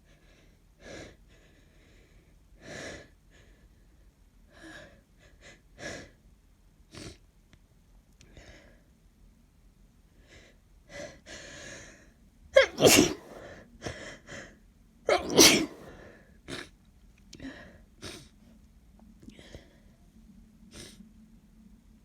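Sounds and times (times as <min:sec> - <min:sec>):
woman sneezing: 0:12.6 - 0:13.4, 0:15.1 - 0:15.9
sniffing: 0:12.6 - 0:13.5, 0:15.1 - 0:16.7.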